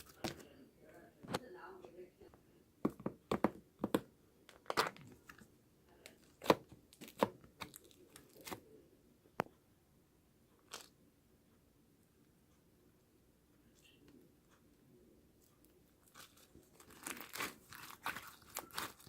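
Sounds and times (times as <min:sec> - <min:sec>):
slime clicks and crackles: 0:16.0 - 0:19.0.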